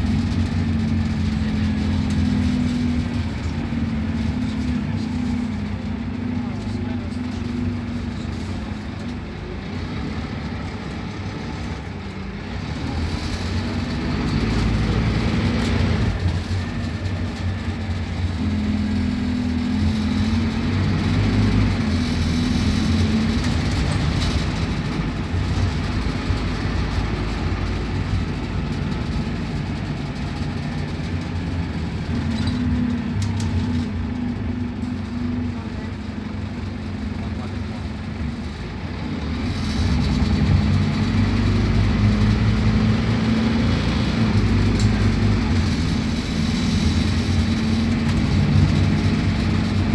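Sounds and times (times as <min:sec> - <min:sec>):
bus diesel engine running: 0:00.0 - 0:49.9.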